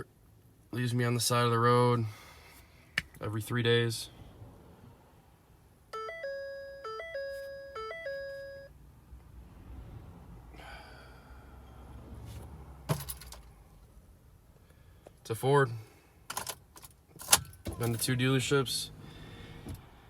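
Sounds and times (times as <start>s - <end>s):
dashboard warning chime: 5.9s - 8.8s.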